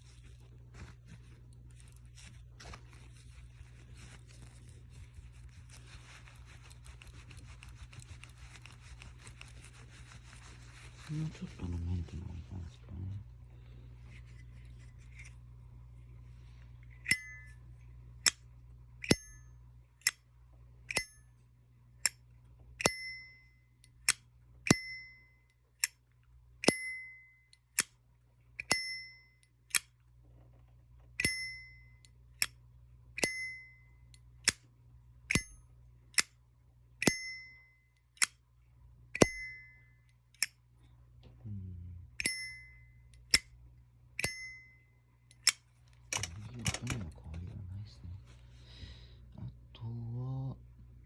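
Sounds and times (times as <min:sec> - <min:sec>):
person speaking: 0:09.8 - 0:14.5, 0:46.1 - 0:50.7
lighter lid ringing ping: 0:24.7 - 0:25.2, 0:44.2 - 0:44.7.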